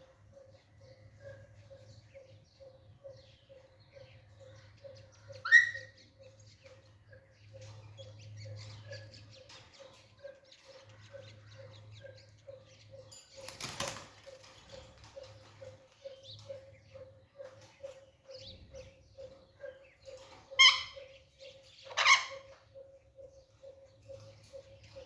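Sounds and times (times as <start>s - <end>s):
wings flapping rustle: 13.4s - 15.1s.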